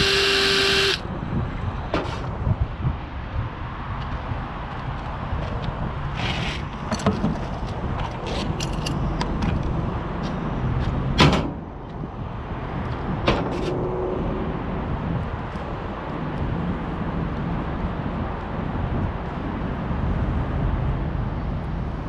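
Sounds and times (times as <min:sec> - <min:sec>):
hand tools and metal parts clicking: 0:00.0 - 0:01.0.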